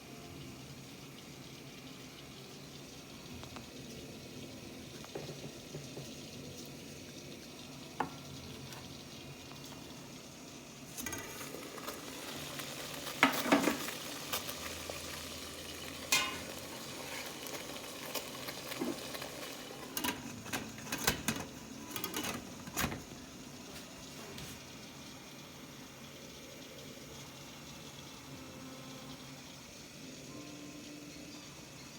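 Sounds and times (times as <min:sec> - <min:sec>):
dishes and utensils clinking: 0:13.2 - 0:14.0, 0:16.1 - 0:17.4, 0:18.7 - 0:23.0.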